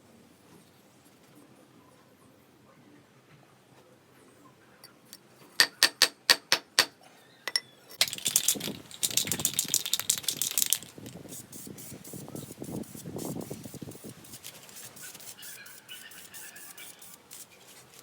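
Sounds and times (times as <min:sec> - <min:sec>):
hard objects tapping: 0:05.1 - 0:11.2
fast rattling clatter: 0:08.0 - 0:11.3.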